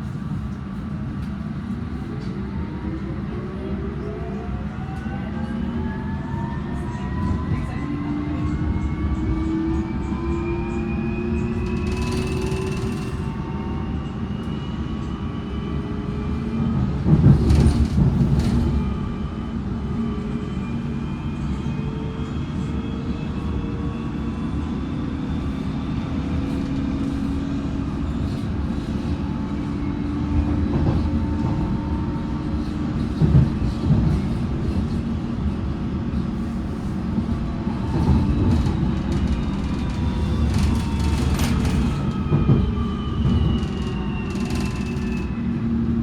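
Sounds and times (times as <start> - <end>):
train rumble inside carriage: 0.0 - 46.0
train clattering: 17.0 - 18.8, 30.4 - 45.3.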